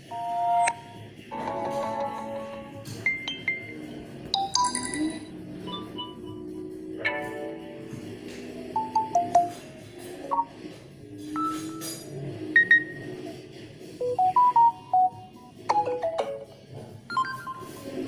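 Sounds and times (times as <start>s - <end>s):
phone alert chimes: 4.4s - 6.3s.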